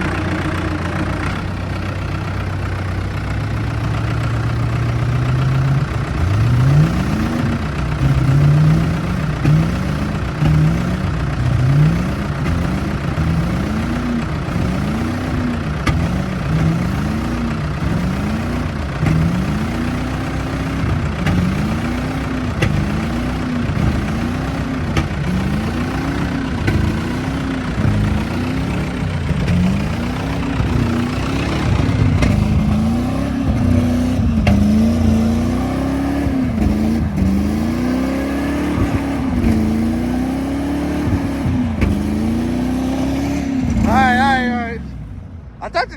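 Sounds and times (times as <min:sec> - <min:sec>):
vehicle engine revving: 0:00.0 - 0:45.6.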